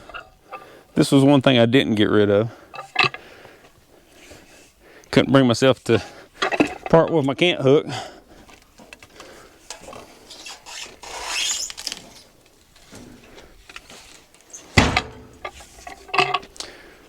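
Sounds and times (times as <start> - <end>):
log scraping and rubbing: 0.0 - 1.5, 2.4 - 7.4, 9.0 - 16.8
ringing metal clanks: 2.7 - 3.2, 14.8 - 16.5.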